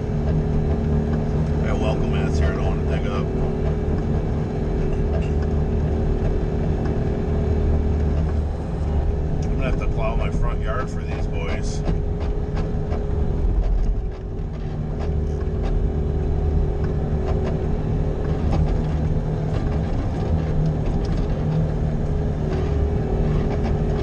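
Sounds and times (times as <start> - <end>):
engine whine: 0.0 - 24.0
loader engine rumbling: 0.0 - 24.0.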